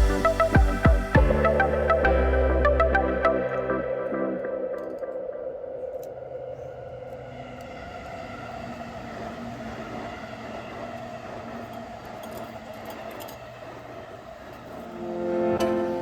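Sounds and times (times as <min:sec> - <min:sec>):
droning music with sustained tones: 0:00.0 - 0:16.0
plucked-string music: 0:15.0 - 0:16.0.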